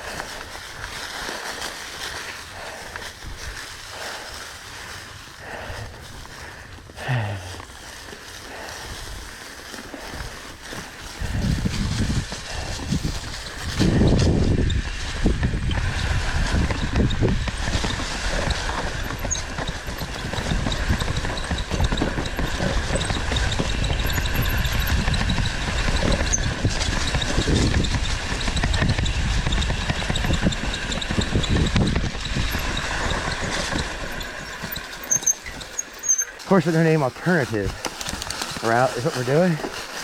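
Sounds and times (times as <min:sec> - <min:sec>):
wind rumble on microphone: 0:00.0 - 0:07.5, 0:10.0 - 0:35.6
bike rattling over bumps: 0:00.0 - 0:40.0
bike tyres rolling over dirt: 0:00.0 - 0:40.0.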